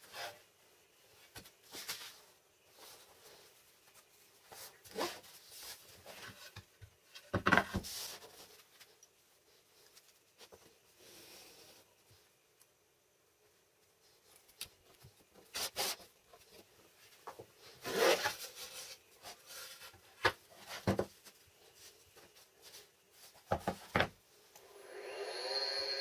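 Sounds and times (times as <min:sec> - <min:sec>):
small electric motor: 0:24.7 - 0:26.0.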